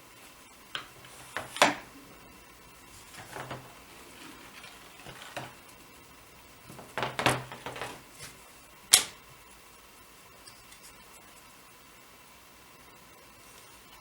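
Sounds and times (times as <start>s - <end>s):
loom knocking and clattering: 3.0s - 8.1s.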